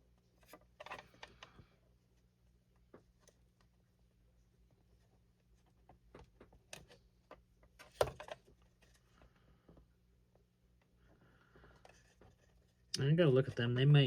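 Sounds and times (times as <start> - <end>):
faint steady hum: 0.0 - 14.0.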